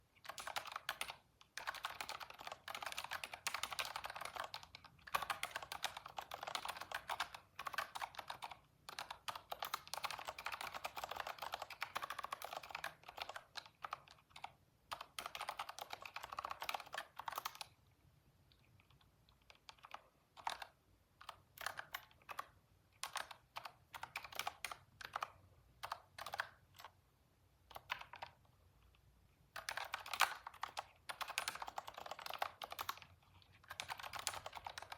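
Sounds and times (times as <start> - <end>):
computer keyboard typing: 0.2 - 17.8, 18.8 - 27.0, 27.6 - 34.9.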